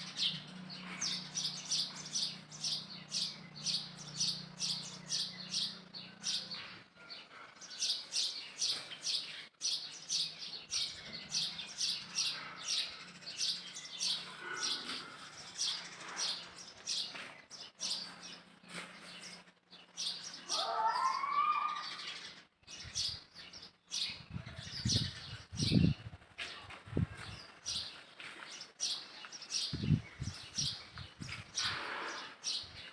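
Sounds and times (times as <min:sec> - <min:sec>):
birds chirping: 0:00.0 - 0:32.9
wavering bird call: 0:20.4 - 0:22.1.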